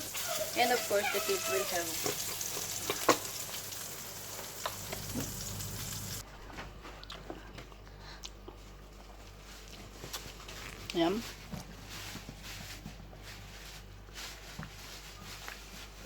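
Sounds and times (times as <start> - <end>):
burger patties sizzling in a pan: 0.0 - 6.2.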